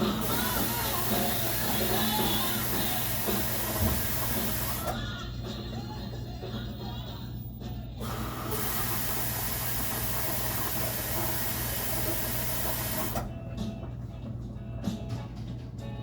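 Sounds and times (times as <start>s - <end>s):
washing machine humming: 0.0s - 16.0s.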